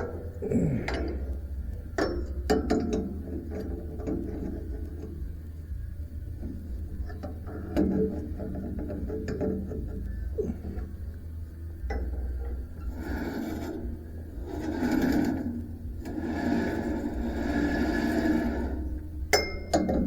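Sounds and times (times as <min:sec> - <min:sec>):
scraping and rubbing: 0:11.9 - 0:19.3.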